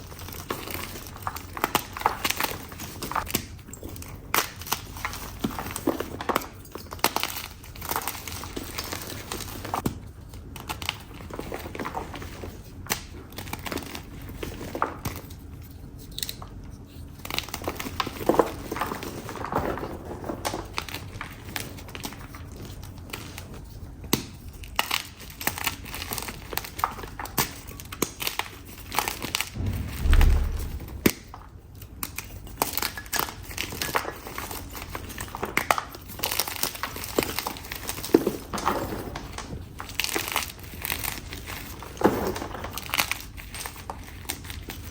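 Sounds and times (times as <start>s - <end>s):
low thump: 29.6s - 31.4s.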